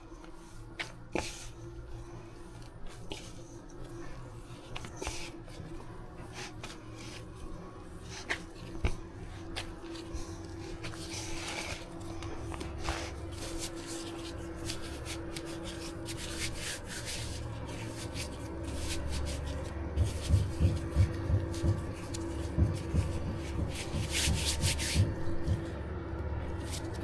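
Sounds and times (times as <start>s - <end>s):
dough being kneaded by hand: 0.0s - 27.0s
dull thuds of dough: 18.7s - 25.9s.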